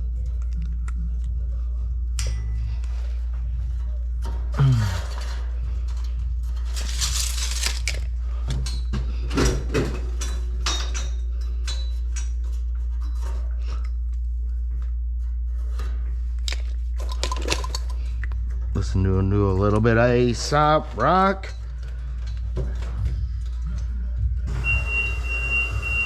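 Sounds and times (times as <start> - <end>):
steady low hum: 0.0 - 26.0
metal scraping: 6.5 - 8.0.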